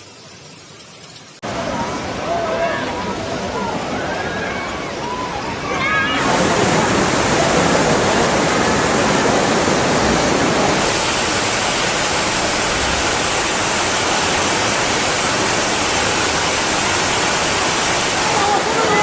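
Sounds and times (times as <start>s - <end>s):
floodwater rushing: 0.0s - 19.0s
bright hiss: 10.7s - 19.0s.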